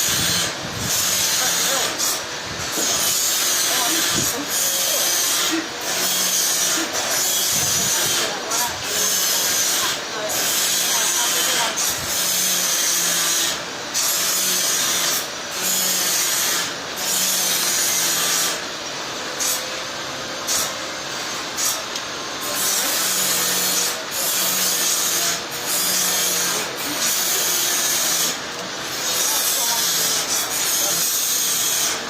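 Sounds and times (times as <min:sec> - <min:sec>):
power tool hissing on wood: 0:00.0 - 0:32.0.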